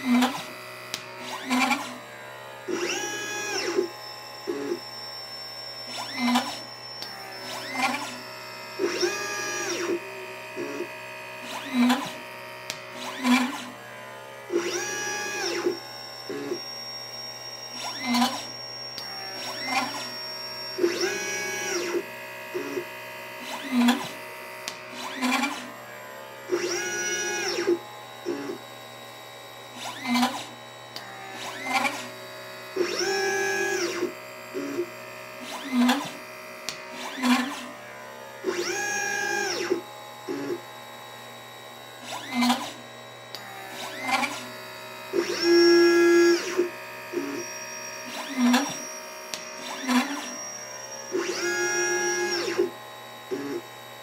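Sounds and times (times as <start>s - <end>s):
stepper motors whining: 0.0s - 54.0s
short buzzes and clicks: 42.0s - 53.8s.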